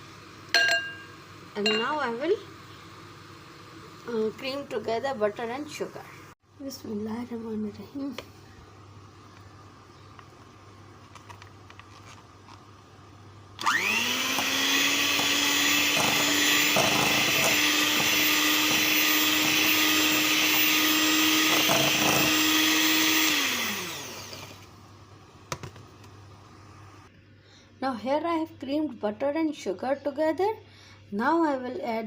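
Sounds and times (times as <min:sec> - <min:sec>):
electric mixer motor whine: 0:13.6 - 0:24.7.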